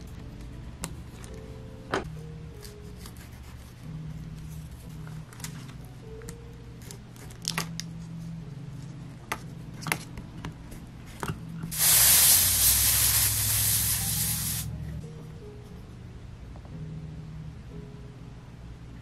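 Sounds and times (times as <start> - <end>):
loud spraying hiss: 11.7 - 14.7.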